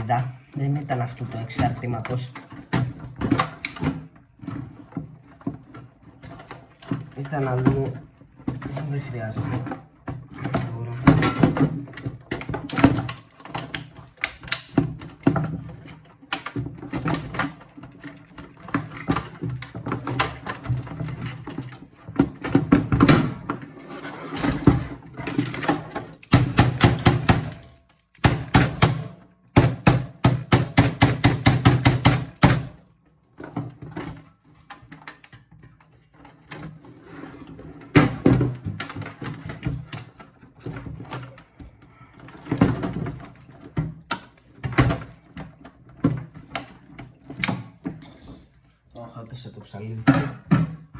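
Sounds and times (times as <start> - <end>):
tools rattling against metal case: 0.9 - 29.0.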